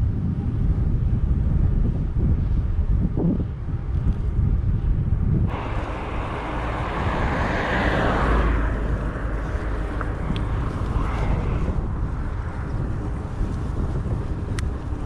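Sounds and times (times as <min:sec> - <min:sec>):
wind rumbling on microphone: 0:00.0 - 0:15.0
passing vehicle hiss: 0:05.5 - 0:13.2.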